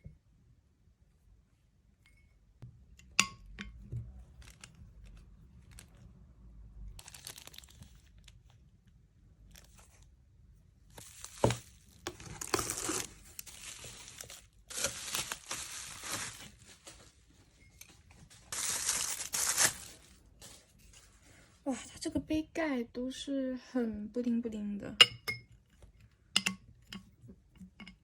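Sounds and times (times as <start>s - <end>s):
packaging crinkling and tearing: 4.4s - 6.1s, 7.0s - 8.4s, 10.9s - 17.1s, 18.4s - 20.6s.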